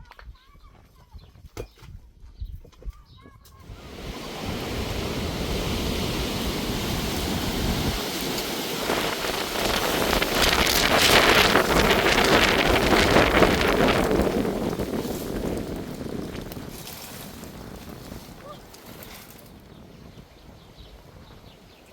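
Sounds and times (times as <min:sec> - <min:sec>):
rain: 0:03.6 - 0:19.4
storm wind: 0:03.6 - 0:21.9.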